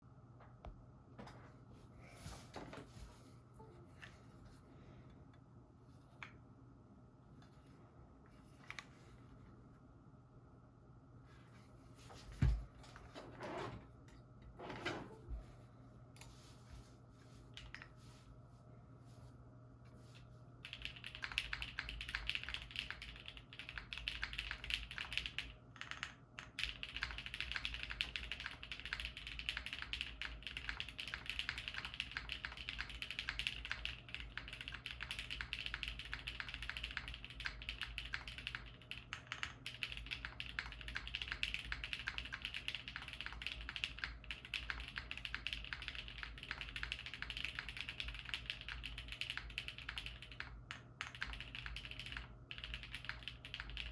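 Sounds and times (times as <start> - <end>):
mechanical keyboard typing: 20.6 - 53.9.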